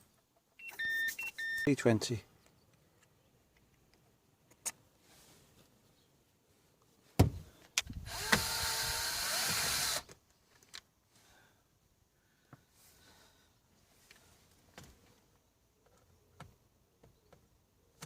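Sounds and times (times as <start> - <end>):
cordless screwdriver running: 8.0 - 10.1.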